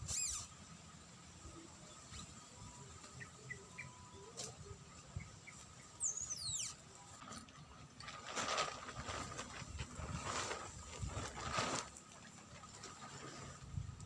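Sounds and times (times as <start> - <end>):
bird whistle sliding down: 0.0 - 0.5
faint outdoor background: 0.0 - 14.0
soft bird chirps: 1.6 - 7.2.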